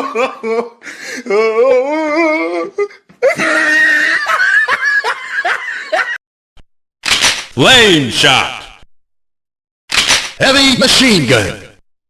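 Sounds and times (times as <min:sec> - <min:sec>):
high-pitched voice laughing: 0:03.2 - 0:06.2.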